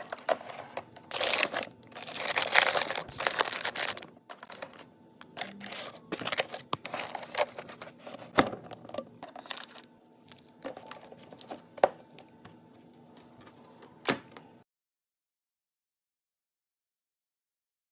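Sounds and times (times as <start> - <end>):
plastic packages handled on shelves: 0.0 - 14.0.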